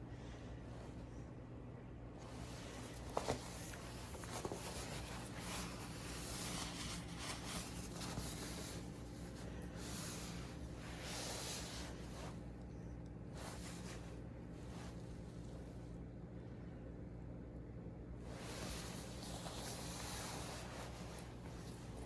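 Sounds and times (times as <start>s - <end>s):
steady low hum: 0.0s - 22.0s
rustling handling noises: 2.1s - 16.0s, 18.2s - 22.0s.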